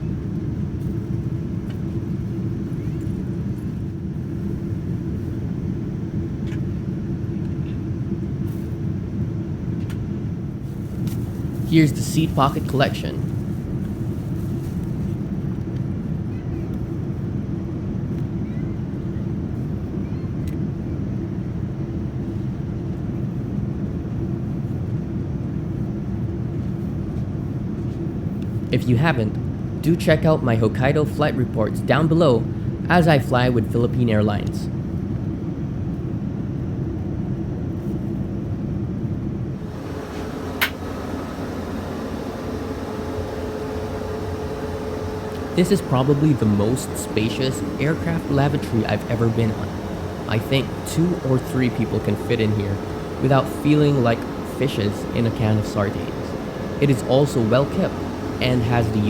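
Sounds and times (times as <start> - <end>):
airliner cabin rumble: 0.0 - 59.0.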